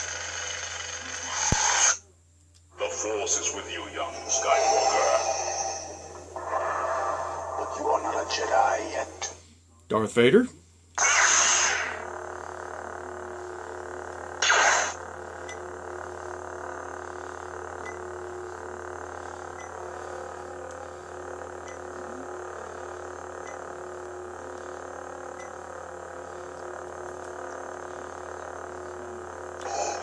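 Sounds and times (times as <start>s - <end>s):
lightsaber electric hum: 0.0s - 9.7s, 10.3s - 30.0s
loud lightsaber burst: 4.2s - 8.3s, 11.0s - 12.0s, 14.4s - 15.0s.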